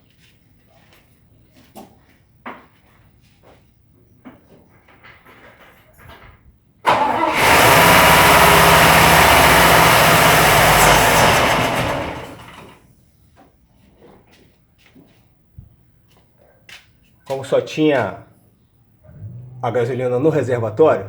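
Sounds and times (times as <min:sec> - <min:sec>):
engine starting and running: 0:06.9 - 0:12.8, 0:19.1 - 0:21.0.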